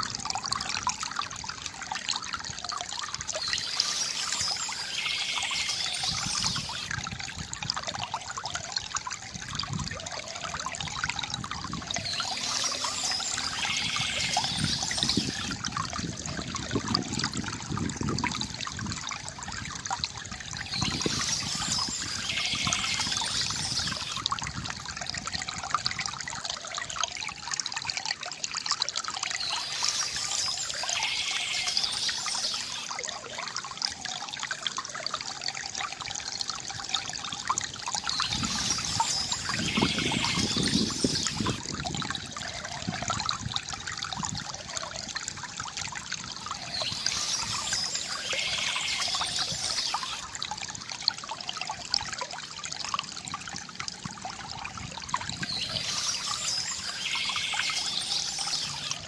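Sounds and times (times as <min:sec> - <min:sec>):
water trickling and gurgling: 0:00.0 - 0:59.0
birds chirping: 0:03.4 - 0:06.9, 0:12.0 - 0:15.5, 0:20.7 - 0:24.2, 0:29.4 - 0:32.9, 0:38.0 - 0:41.6, 0:46.6 - 0:50.2, 0:55.3 - 0:59.0.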